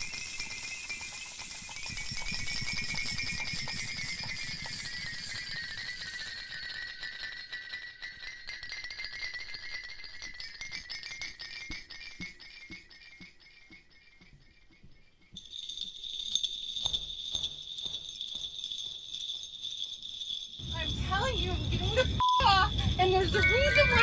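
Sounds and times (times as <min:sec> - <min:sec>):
jingling rattling pulse: 0:00.0 - 0:08.5, 0:15.4 - 0:24.0
high electronic tones: 0:20.6 - 0:24.0.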